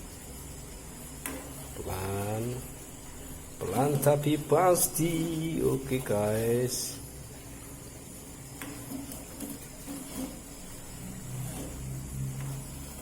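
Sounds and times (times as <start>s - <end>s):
pot of water simmering: 0.0s - 13.0s
faint stirring clicks: 1.0s - 6.4s, 7.3s - 13.0s.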